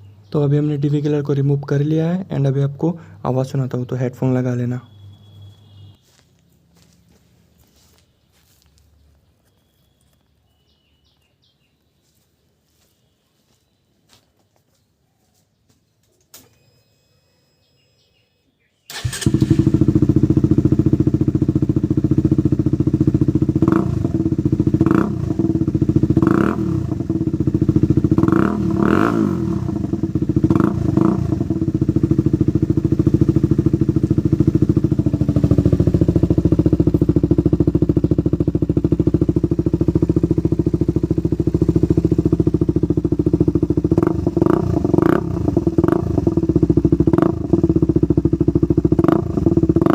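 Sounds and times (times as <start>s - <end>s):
motorcycle throttle blips: 4.8s - 7.0s, 18.9s - 49.9s
motorcycle engine idling: 18.9s - 49.9s.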